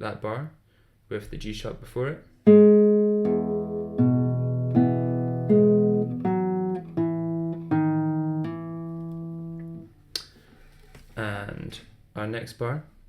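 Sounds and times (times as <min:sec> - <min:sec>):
guitar notes plucked slowly: 0:02.5 - 0:09.9.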